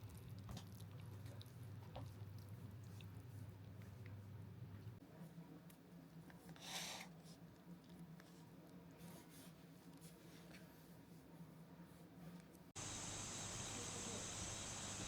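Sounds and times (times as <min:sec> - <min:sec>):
faint low hum: 0:07.2 - 0:15.0
soft rustle: 0:08.2 - 0:15.0.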